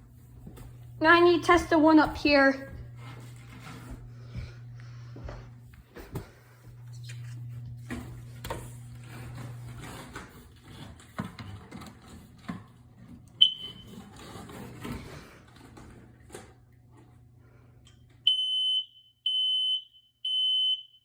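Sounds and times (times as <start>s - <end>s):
smoke alarm beep: 13.4s - 13.9s, 18.3s - 21.0s.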